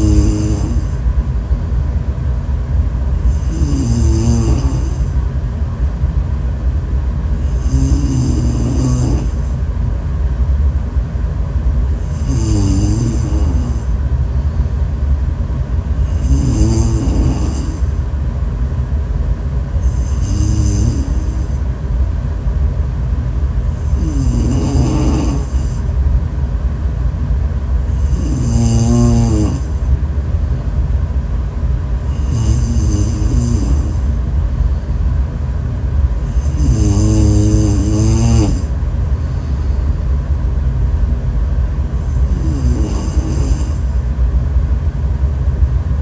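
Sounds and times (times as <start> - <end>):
person snoring: 0.0 - 1.0, 3.2 - 5.1, 7.4 - 9.5, 12.0 - 13.9, 16.0 - 18.0, 19.8 - 21.6, 23.7 - 25.8, 27.9 - 29.8, 32.1 - 34.2, 36.2 - 39.8, 42.0 - 43.9
steady low rumble: 0.0 - 46.0.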